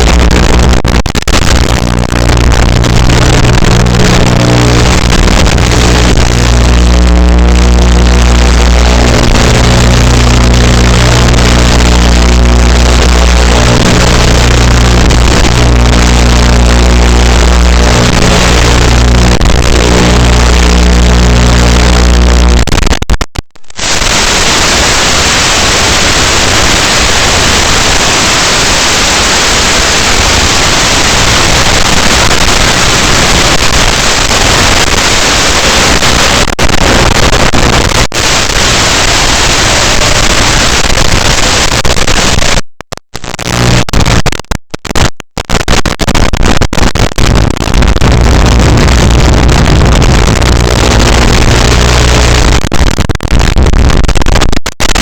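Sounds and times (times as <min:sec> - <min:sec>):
loud steady hiss: 0:23.6 - 0:42.6.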